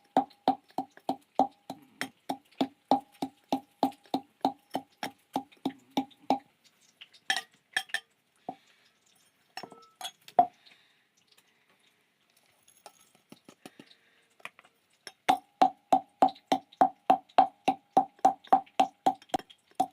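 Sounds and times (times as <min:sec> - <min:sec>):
rhythmic kitchen knocking: 0:00.0 - 0:06.5, 0:15.1 - 0:19.9
utensils and dishes clinking: 0:07.3 - 0:08.2, 0:09.5 - 0:10.4.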